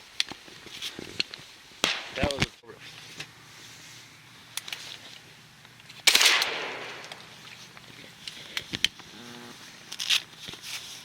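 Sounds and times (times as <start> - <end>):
shotgun blast: 1.8 - 2.4, 6.1 - 7.2.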